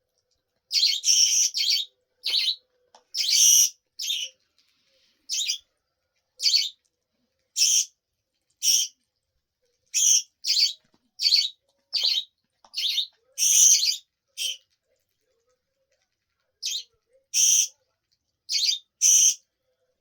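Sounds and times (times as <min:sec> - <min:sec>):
parrot chirping: 0:00.7 - 0:04.4, 0:05.3 - 0:05.6, 0:06.4 - 0:06.8, 0:07.6 - 0:07.9, 0:08.6 - 0:09.0, 0:09.9 - 0:14.6, 0:16.6 - 0:17.7, 0:18.5 - 0:19.4.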